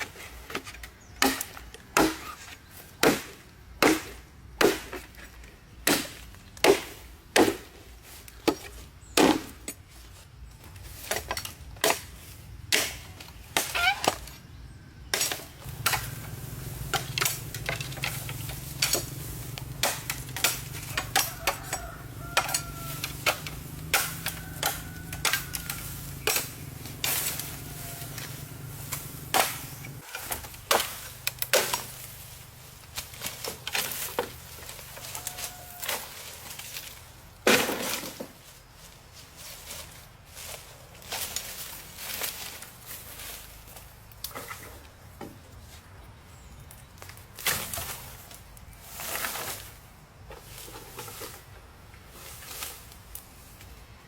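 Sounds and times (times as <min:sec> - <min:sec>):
steady low hum: 0:15.6 - 0:30.0.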